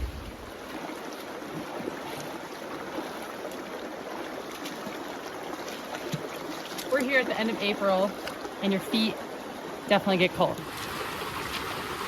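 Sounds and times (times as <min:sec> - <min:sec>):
creek water flowing: 0:00.0 - 0:12.0.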